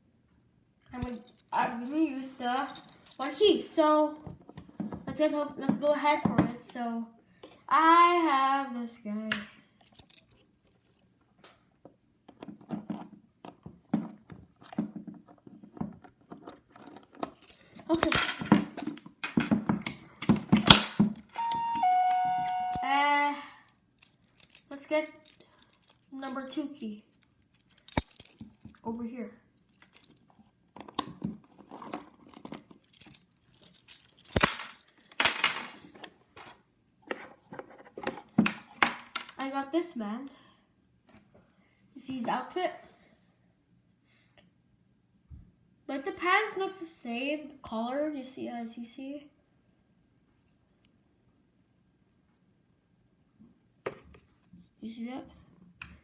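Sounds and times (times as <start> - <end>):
wooden toy parts clicking and rattling: 24.0 - 28.9, 29.6 - 36.6.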